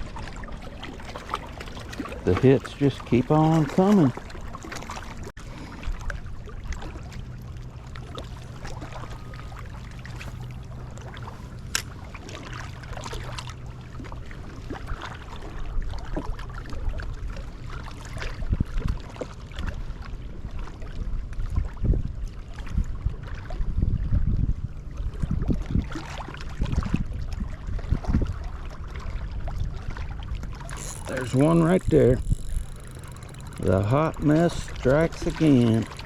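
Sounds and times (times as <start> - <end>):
small clicks: 30.7 - 36.0.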